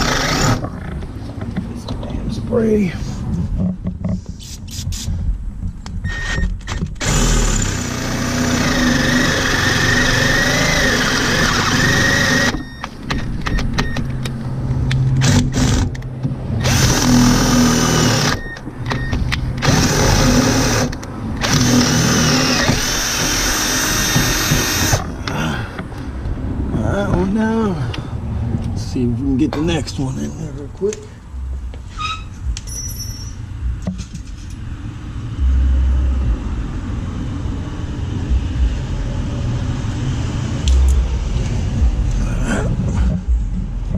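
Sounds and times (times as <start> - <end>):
electric drill boring steel: 0.0 - 0.6, 7.0 - 12.7, 16.6 - 18.4, 19.6 - 25.0.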